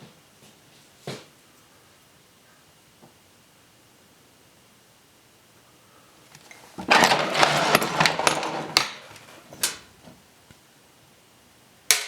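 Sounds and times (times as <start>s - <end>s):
hard parts clattering: 6.4s - 10.1s.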